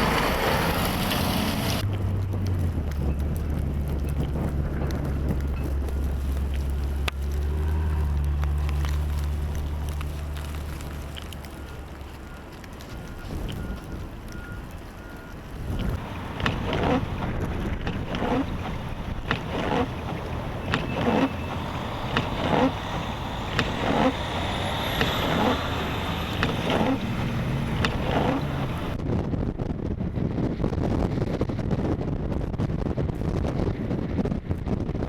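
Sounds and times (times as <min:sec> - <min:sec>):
blizzard wind rumble: 0:00.0 - 0:35.0
footsteps crunching through snow: 0:02.6 - 0:29.0.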